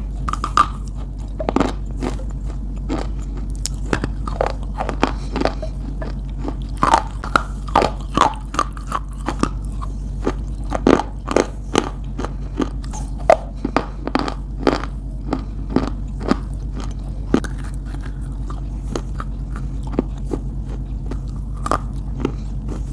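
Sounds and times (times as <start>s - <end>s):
crunchy chewing: 0.0s - 22.9s
steady low hum: 0.0s - 22.9s.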